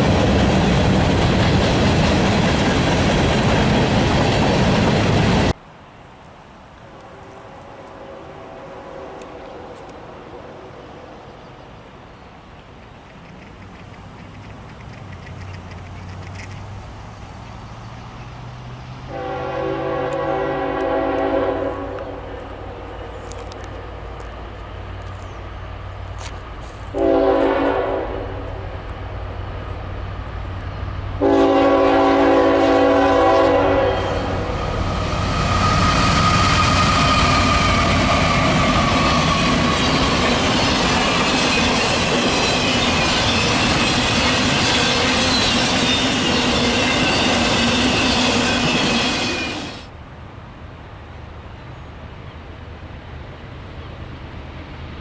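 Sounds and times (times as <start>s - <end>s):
train passing: 0.0s - 55.0s
locomotive horn blasts: 6.9s - 9.7s, 19.1s - 22.4s, 26.9s - 28.5s, 31.2s - 34.7s
wheels squealing: 34.0s - 49.9s.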